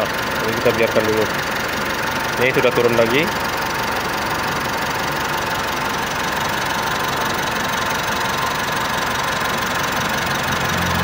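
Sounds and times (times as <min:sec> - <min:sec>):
car engine idling: 0:00.0 - 0:11.0.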